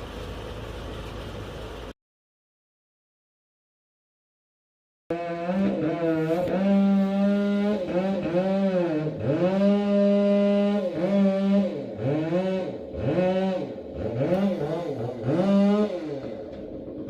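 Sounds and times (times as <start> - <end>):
chainsaw running: 5.1 - 17.0.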